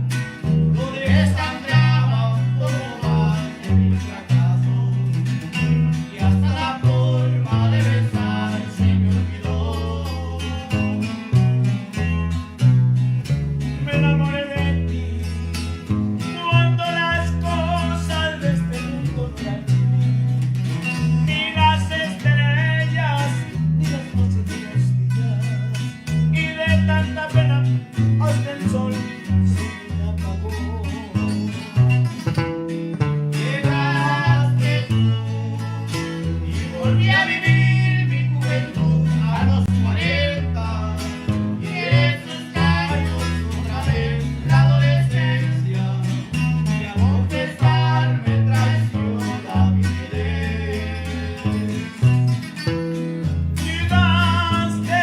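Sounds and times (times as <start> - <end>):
bouncing bass line: 0.0 - 55.0
plucked strings: 30.7 - 35.2.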